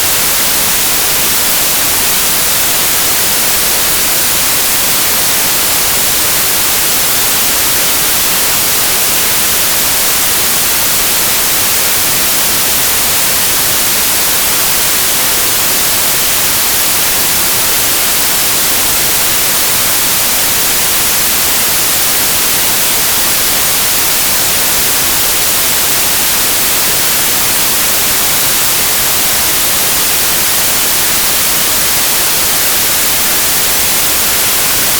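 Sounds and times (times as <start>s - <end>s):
white noise hiss: 0.0s - 34.9s.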